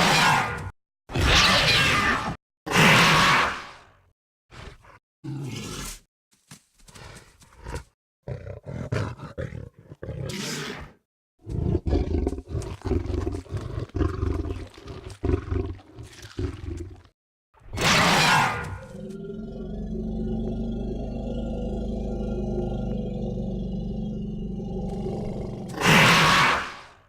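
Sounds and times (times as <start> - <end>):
large animal roaring and growling: 17.7 - 26.9.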